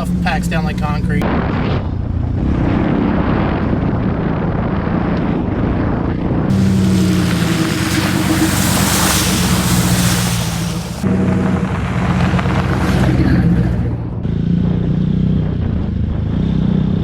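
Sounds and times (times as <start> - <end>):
truck engine running: 0.0 - 1.2, 6.5 - 14.4
water spraying hiss: 6.5 - 11.1.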